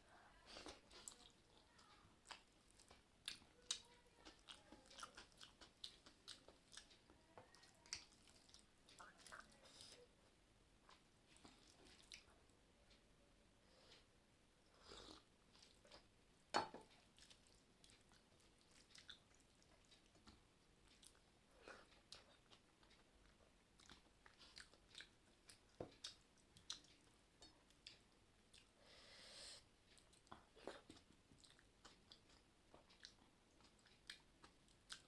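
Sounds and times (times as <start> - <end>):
person chewing with wet mouth clicks: 0.6 - 10.0, 10.9 - 12.3, 16.8 - 28.8, 29.9 - 35.0.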